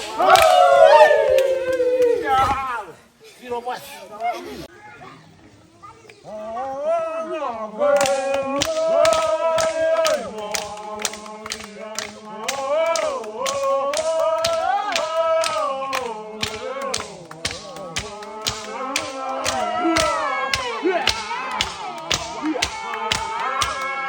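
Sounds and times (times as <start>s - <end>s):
voices chanting together: 0.0s - 3.2s, 6.1s - 24.0s
sharp percussive beats: 8.0s - 23.9s.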